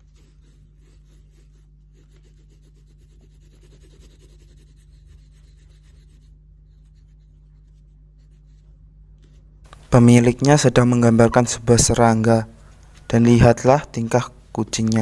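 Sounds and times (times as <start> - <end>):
pencil scratching on paper: 0.0 - 9.6
low electrical hum: 0.0 - 15.0.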